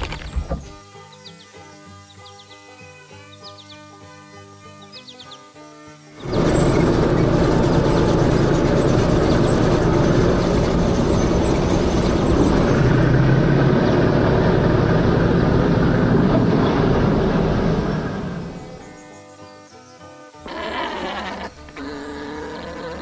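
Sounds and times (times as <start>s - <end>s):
heavy machinery running: 6.2s - 19.0s.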